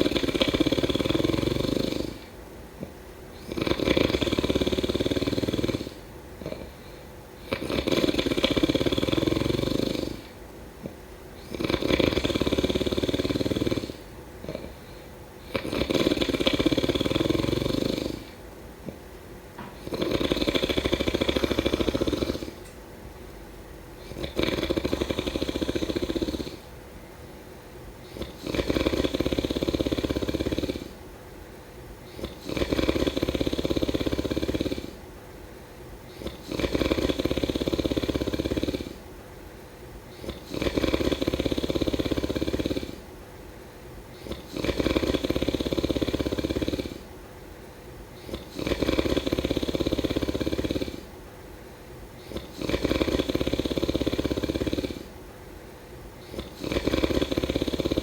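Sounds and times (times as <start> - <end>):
person snoring: 0.0 - 2.3, 3.4 - 18.4, 19.6 - 22.8, 24.0 - 26.7, 28.0 - 31.0, 32.0 - 35.0, 36.1 - 39.1, 40.1 - 43.1, 44.1 - 47.1, 48.2 - 51.1, 52.2 - 55.2, 56.2 - 58.0.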